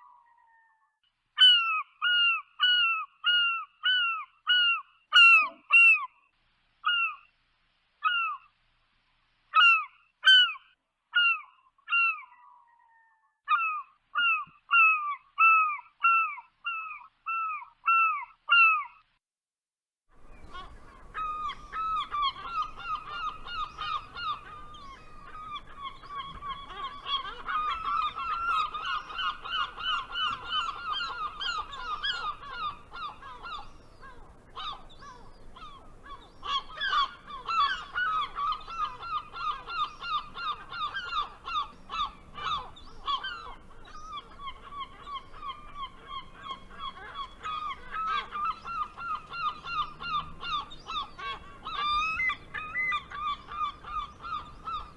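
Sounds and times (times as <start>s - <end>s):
gulls calling: 20.2s - 54.9s.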